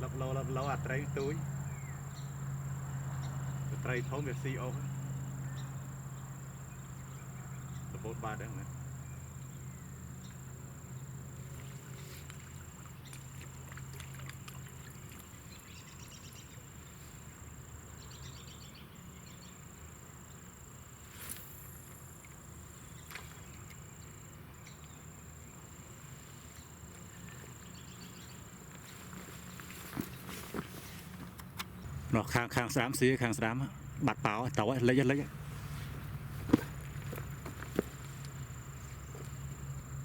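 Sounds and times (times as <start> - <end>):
low hum: 0.0 - 40.0.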